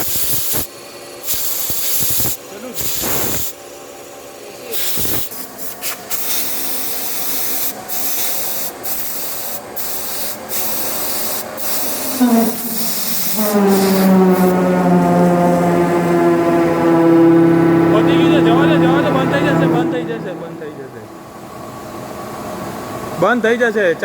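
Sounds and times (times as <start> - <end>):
hissing spray: 0.0 - 3.6, 4.7 - 14.8
motor whine rising in pitch: 10.7 - 22.7.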